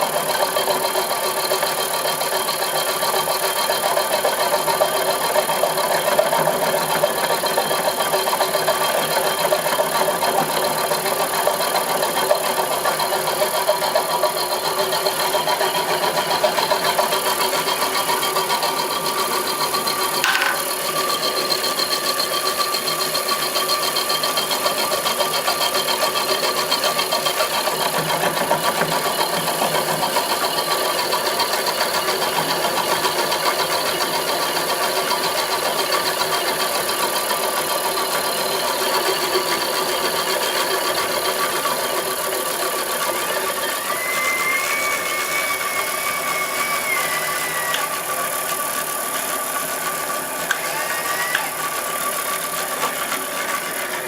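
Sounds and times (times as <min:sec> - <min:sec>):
milling machine rattling: 0:07.4 - 0:26.0
steady machine tones: 0:43.3 - 0:52.5.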